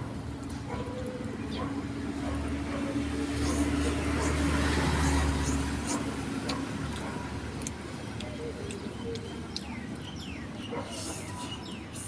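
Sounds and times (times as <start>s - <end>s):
steady background noise: 0.0s - 12.0s
birds chirping: 0.7s - 2.4s, 7.9s - 12.0s.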